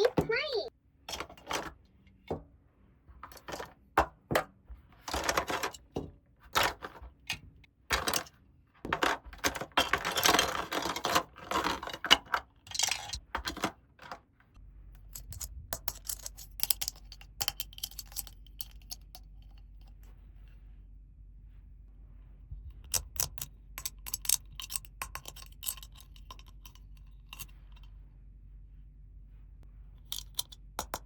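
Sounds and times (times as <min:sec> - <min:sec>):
plastic toy pieces clattering: 0:05.0 - 0:05.9, 0:06.5 - 0:07.1, 0:07.9 - 0:14.2, 0:15.1 - 0:19.6, 0:22.9 - 0:27.5, 0:30.0 - 0:31.0
low steady hum: 0:14.5 - 0:31.0.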